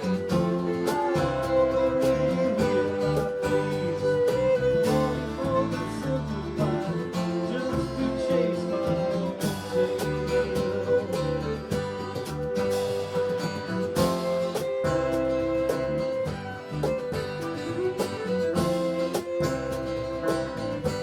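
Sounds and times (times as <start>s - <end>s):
strummed acoustic guitars: 0.0s - 21.0s
walking bass line: 0.0s - 21.0s
percussion taps: 6.6s - 21.0s.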